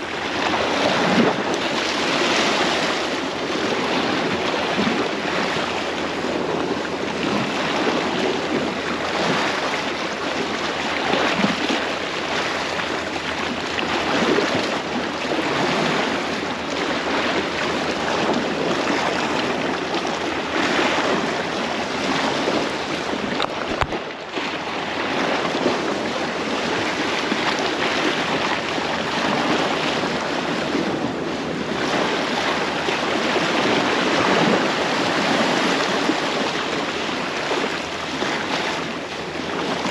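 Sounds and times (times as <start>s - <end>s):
surf on rocky shore: 0.0s - 39.9s
wind buffeting microphone: 0.0s - 39.9s.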